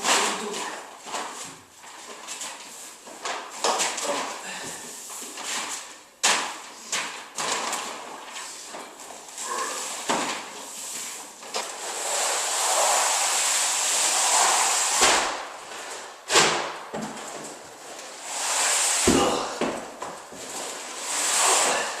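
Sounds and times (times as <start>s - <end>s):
rustling and scraping: 0.0s - 22.0s
heavy flooring roll knocking: 14.3s - 18.3s, 18.9s - 21.2s.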